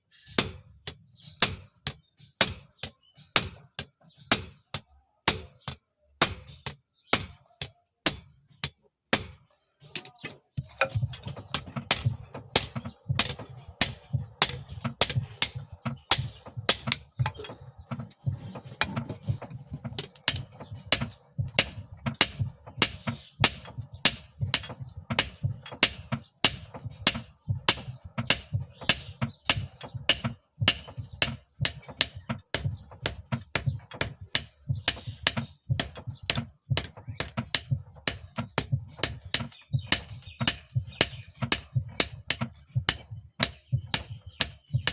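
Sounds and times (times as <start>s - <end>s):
hammer striking steel: 10.8s - 18.0s, 20.0s - 44.9s
steady low hum: 10.8s - 44.9s.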